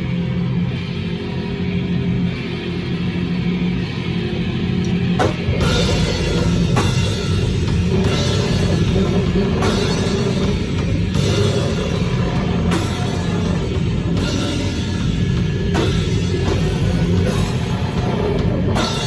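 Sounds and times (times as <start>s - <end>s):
distorted guitar and bass drone: 0.0s - 19.0s
drum kit: 0.0s - 19.0s
cymbal crashes: 5.0s - 19.0s.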